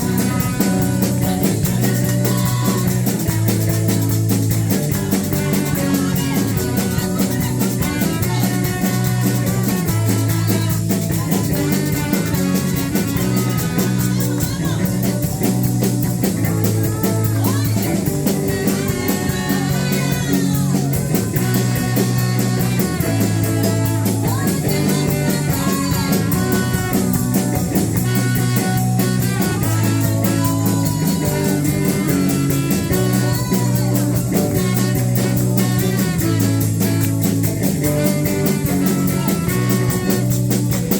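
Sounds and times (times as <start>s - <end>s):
electric guitar band music: 0.0s - 40.9s.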